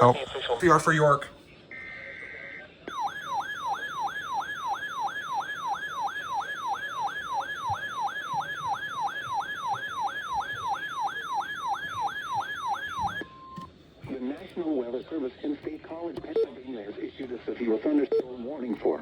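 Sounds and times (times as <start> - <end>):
electronic siren falling sweep: 2.9 - 13.3.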